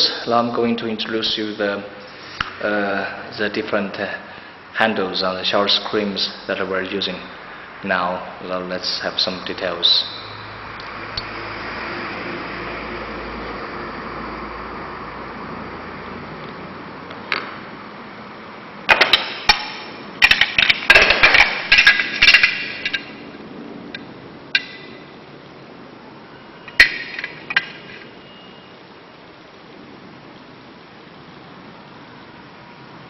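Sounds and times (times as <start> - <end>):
steady low hiss: 0.0 - 33.0
metal handles clinking: 18.9 - 23.3, 26.7 - 28.1
metallic ring: 19.0 - 23.4, 24.6 - 25.2, 26.6 - 28.7.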